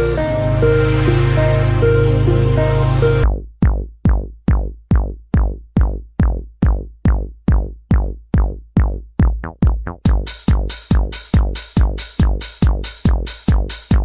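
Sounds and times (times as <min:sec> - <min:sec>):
synth chord: 0:00.0 - 0:03.2
drum machine kick: 0:03.2 - 0:14.0.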